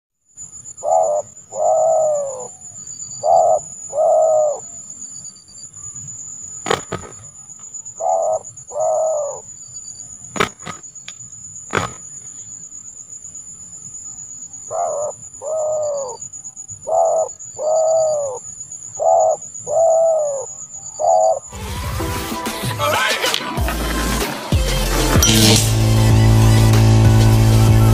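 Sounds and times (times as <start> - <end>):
dove cooing: 0.8 - 2.6, 3.2 - 4.7, 8.0 - 9.5, 14.7 - 16.2, 16.8 - 21.5
steady high-pitched whine: 25.2 - 27.9.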